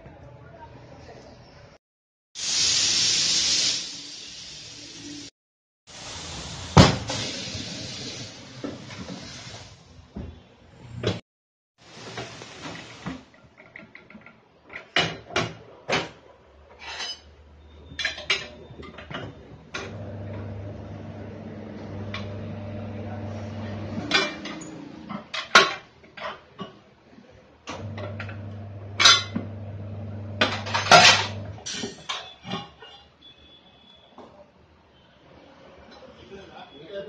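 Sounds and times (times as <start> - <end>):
low machine hum: 20.0 - 24.0.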